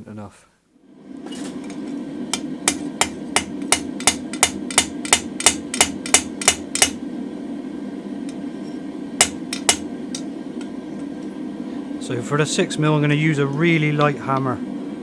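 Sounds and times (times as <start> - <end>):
steady low hum: 0.0 - 15.0
hammer striking steel on anvil: 2.4 - 7.0, 9.2 - 9.9.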